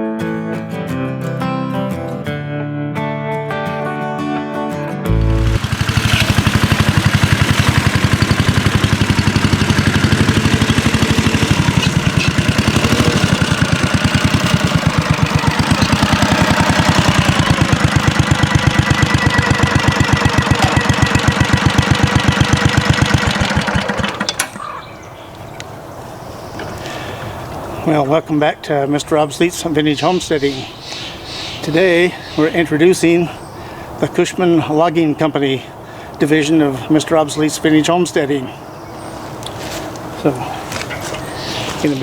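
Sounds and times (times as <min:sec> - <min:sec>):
scooter engine chugging: 0:05.1 - 0:25.0.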